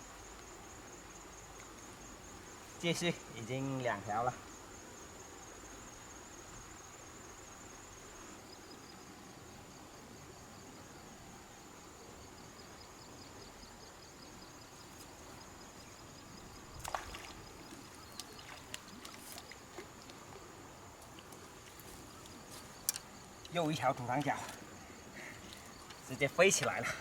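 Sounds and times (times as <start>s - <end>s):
insect high-pitched whine: 0.0s - 27.0s
insect pulsing trill: 12.3s - 20.4s
flowing water: 16.4s - 27.0s.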